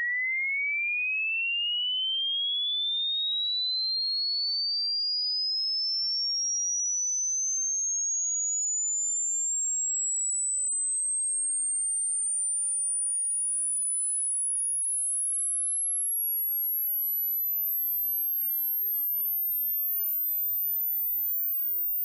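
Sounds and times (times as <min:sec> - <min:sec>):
high-pitched sine tone sweep: 0:06.4 - 0:22.0.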